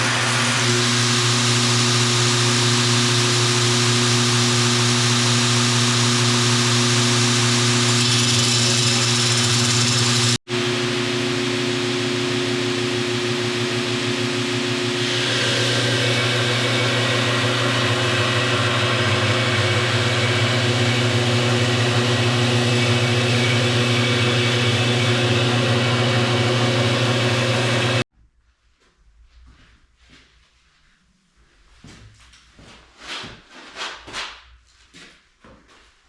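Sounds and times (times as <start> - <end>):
electric grinder grinding steel: 0.0 - 28.0.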